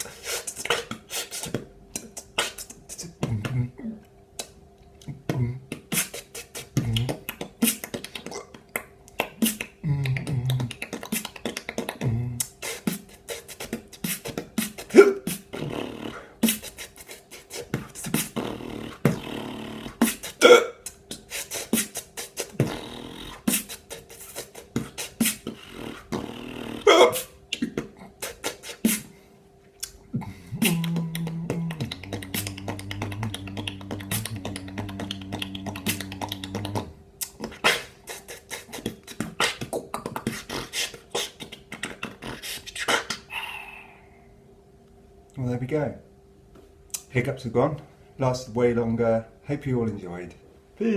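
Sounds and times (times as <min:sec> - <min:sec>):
beatboxing vocal drum beat: 0:00.0 - 0:29.1, 0:29.8 - 0:43.6
vocal bass tone: 0:00.6 - 0:29.1, 0:29.8 - 0:44.0
hiccups: 0:14.0 - 0:16.7, 0:19.1 - 0:21.1, 0:24.8 - 0:27.8, 0:37.2 - 0:39.7.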